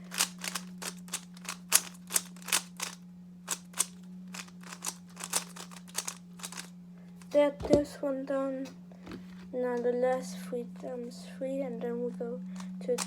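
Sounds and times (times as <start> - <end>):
steady low hum: 0.0 - 13.0
plastic puzzle cube clicking: 0.1 - 6.7.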